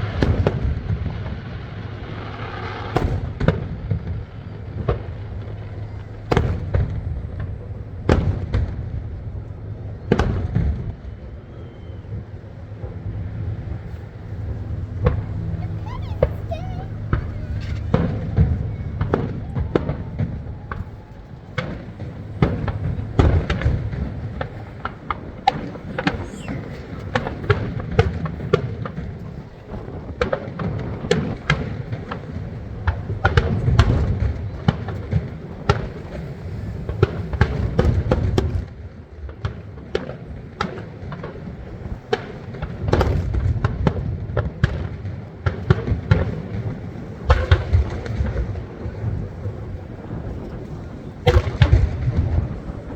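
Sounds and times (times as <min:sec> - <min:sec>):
firework shell booms: 0:00.0 - 0:05.6, 0:06.2 - 0:09.0, 0:17.0 - 0:36.1, 0:39.4 - 0:49.2, 0:51.2 - 0:52.9
firework crackling bursts: 0:00.0 - 0:09.2, 0:12.0 - 0:52.9.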